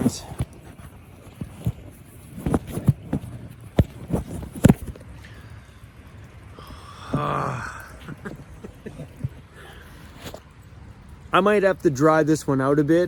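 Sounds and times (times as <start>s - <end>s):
knocks and clicks of handling: 0.0s - 5.1s.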